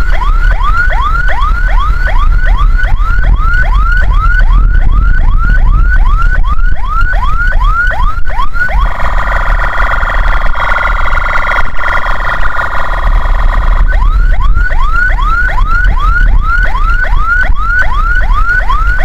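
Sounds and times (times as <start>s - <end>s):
ambulance siren: 0.0s - 19.0s
engine and road rumble: 0.0s - 19.0s.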